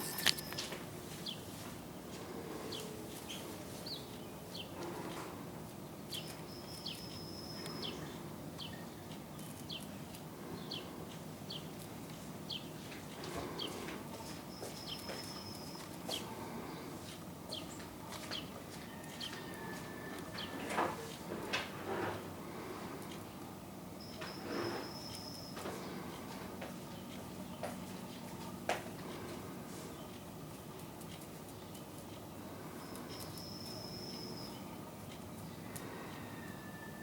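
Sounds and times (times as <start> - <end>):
outdoor background hiss: 0.0 - 37.0
bird chirping: 6.1 - 11.7, 32.8 - 34.8.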